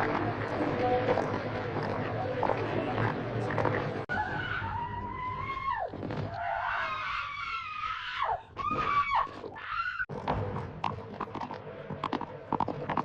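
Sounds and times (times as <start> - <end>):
people screaming in panic: 4.1 - 10.1.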